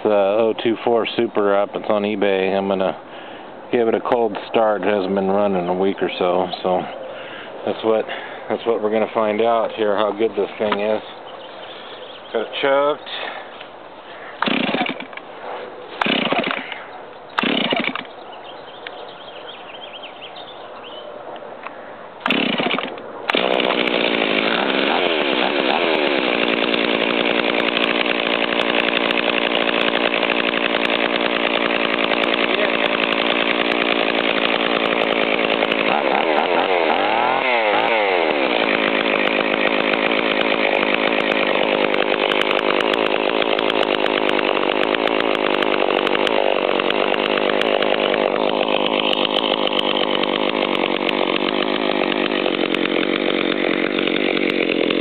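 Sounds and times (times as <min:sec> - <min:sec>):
chainsaw running and revving: 0:07.7 - 0:11.2, 0:14.3 - 0:15.2, 0:16.0 - 0:16.8, 0:17.4 - 0:18.2, 0:22.2 - 0:55.0
starter cord pulls: 0:14.4 - 0:15.2, 0:16.0 - 0:16.7, 0:17.4 - 0:18.1, 0:22.2 - 0:36.8.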